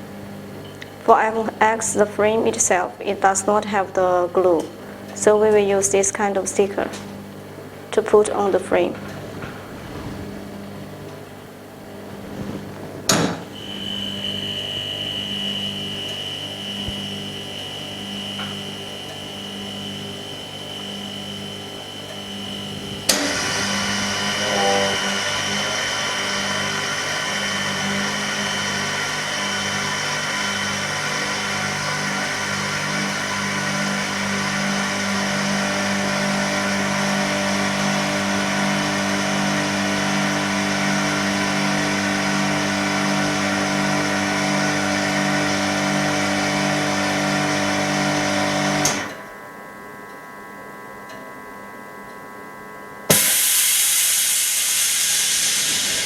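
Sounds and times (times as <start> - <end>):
machine humming: 0.0 - 49.4
steady hiss: 12.1 - 23.4, 53.1 - 56.0
thin high tone: 13.5 - 23.0, 24.2 - 26.2.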